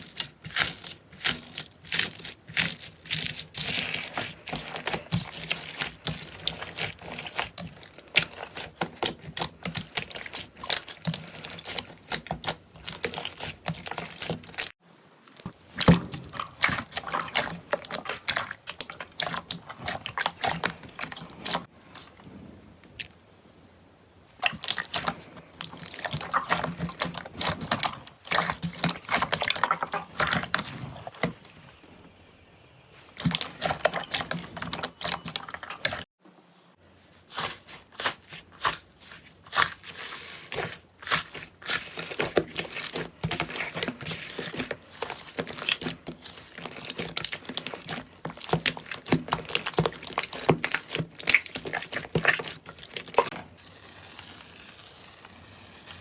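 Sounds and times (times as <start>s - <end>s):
slime squishing and popping: 0.0s - 14.7s, 15.4s - 22.2s, 24.4s - 31.4s, 33.2s - 36.0s, 40.6s - 53.3s.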